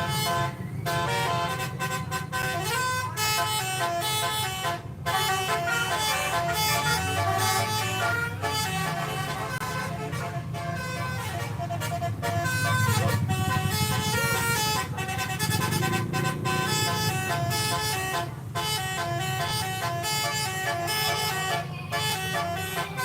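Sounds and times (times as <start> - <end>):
bus multi-tone horn playing a tune: 0.0 - 23.0
low rumble of bus engine: 0.0 - 23.0.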